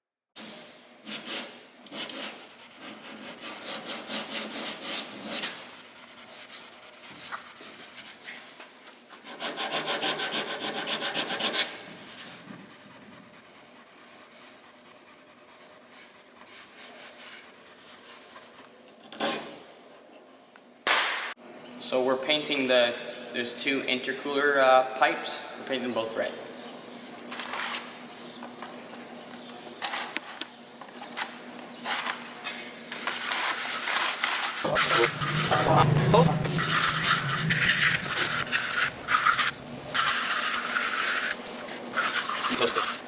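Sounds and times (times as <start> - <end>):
rubbing strokes on hard surface: 1.1 - 18.7, 34.6 - 43.0.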